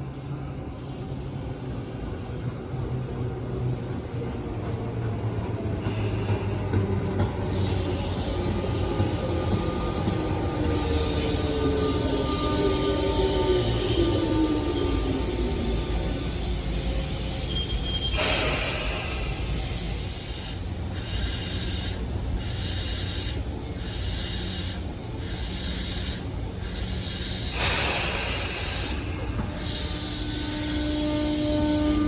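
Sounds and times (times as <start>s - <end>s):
electric train: 0.0s - 32.0s
hissing surges of air: 7.4s - 31.4s.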